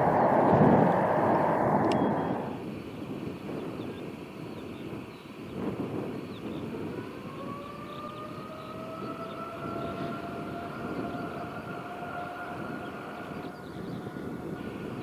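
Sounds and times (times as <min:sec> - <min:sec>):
low rumble: 0:00.0 - 0:02.6
jet engine whine: 0:00.0 - 0:15.0.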